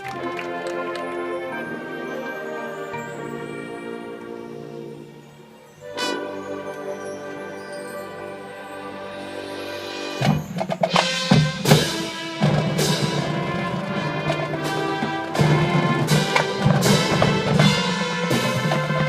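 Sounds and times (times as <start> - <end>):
marching band playing: 0.0 - 19.0
percussion hits: 10.0 - 19.0
drum strikes: 10.2 - 19.0.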